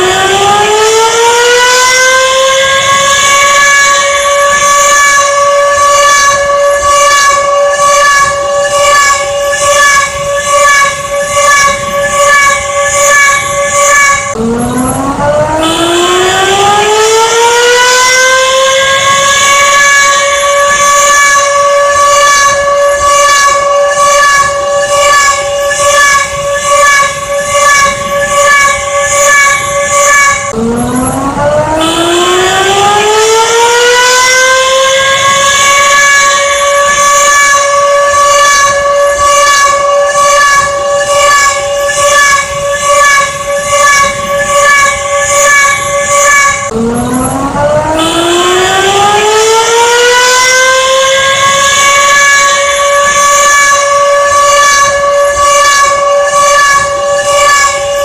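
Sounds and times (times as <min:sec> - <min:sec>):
emergency warning siren: 0:00.0 - 0:58.0.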